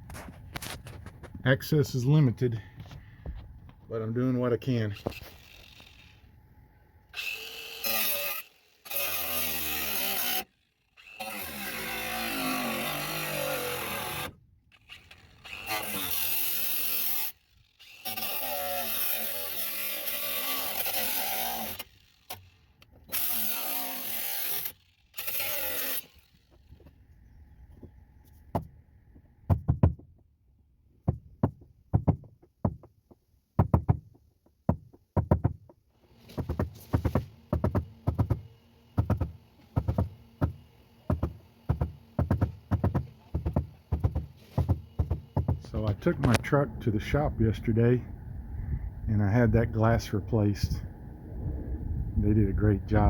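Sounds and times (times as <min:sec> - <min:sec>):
power tool running: 0:05.0 - 0:06.3, 0:07.1 - 0:26.9, 0:36.0 - 0:46.4.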